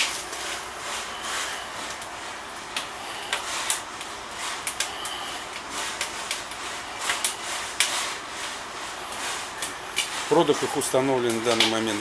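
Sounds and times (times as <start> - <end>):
fire hissing: 0.0 - 12.0
wood fire crackling and popping: 0.0 - 12.0.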